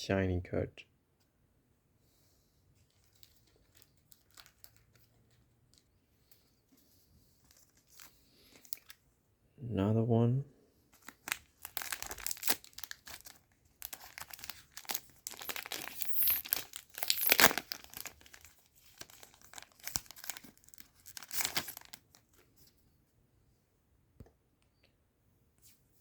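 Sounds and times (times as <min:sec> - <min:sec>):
wrapper tearing and crinkling: 0:02.9 - 0:05.1, 0:11.0 - 0:22.3.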